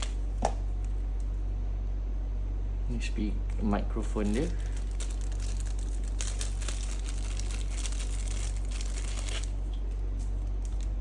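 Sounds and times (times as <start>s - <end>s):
plastic packaging crinkling: 0.0s - 1.4s, 4.1s - 11.0s
low electrical hum: 0.0s - 11.0s.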